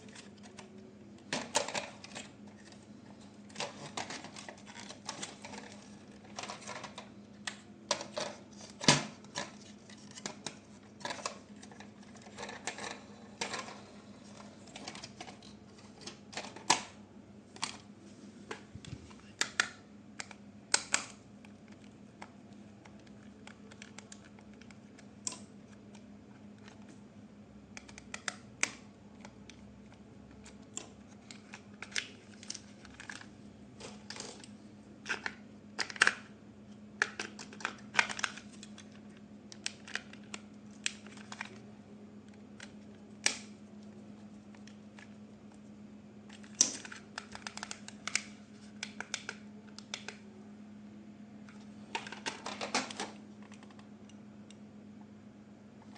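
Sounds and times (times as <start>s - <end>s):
hands handling objects: 0.0s - 16.8s
steady low hum: 0.0s - 55.9s.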